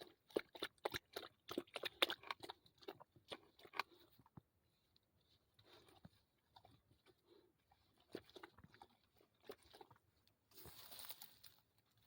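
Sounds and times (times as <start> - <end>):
dog lapping water: 0.0 - 4.3, 5.7 - 10.0.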